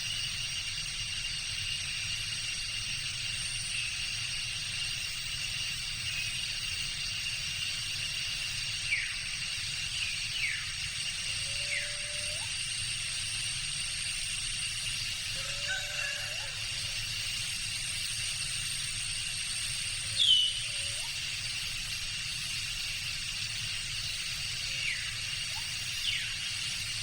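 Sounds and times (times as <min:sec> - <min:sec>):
insect chorus: 0:00.0 - 0:27.0
lower rising bird call: 0:11.3 - 0:12.5, 0:20.1 - 0:21.2.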